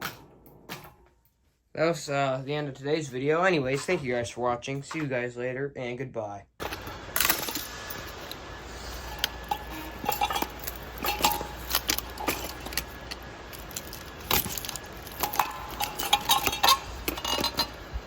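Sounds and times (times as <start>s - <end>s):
ceiling fan humming: 6.6s - 18.0s
loose metal parts rattling: 6.6s - 18.0s.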